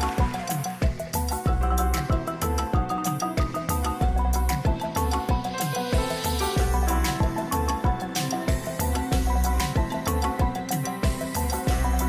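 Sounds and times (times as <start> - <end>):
held chords: 0.0 - 12.0
deep drum thumps: 6.0 - 12.0.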